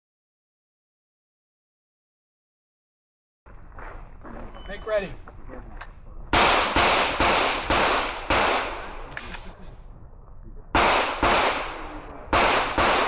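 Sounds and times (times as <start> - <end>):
gunshots with ringing echo: 6.3 - 9.4, 10.7 - 13.0.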